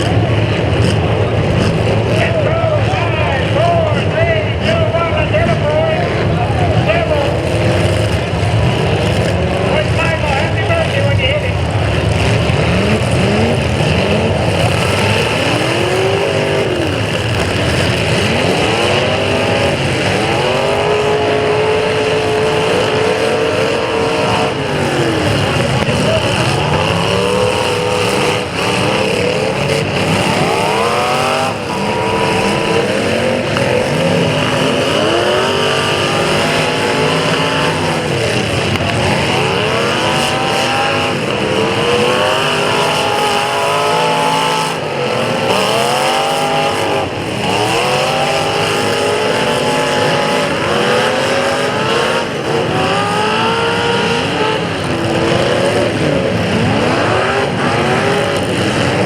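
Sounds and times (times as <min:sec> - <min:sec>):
car engines revving: 0:00.0 - 0:59.0.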